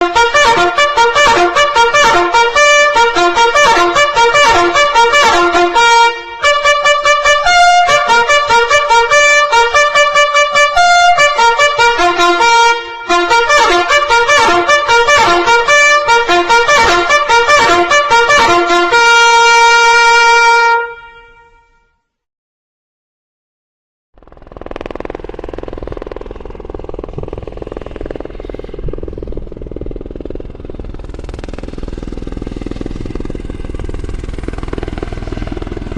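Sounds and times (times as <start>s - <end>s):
brass lead playing quick notes: 0.0s - 21.8s.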